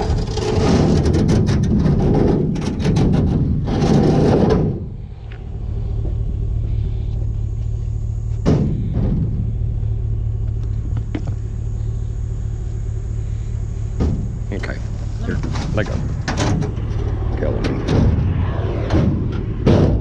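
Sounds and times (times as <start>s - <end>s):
vehicle engine idling: 4.7s - 20.0s.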